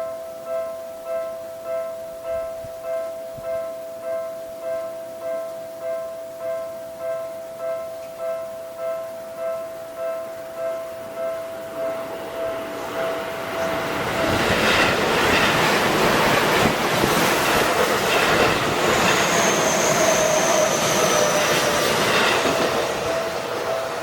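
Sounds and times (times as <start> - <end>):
level crossing warning bell: 0.0 - 24.0
train wheels clacking over rail joints: 13.6 - 24.0
high wheel squeal: 18.1 - 23.9.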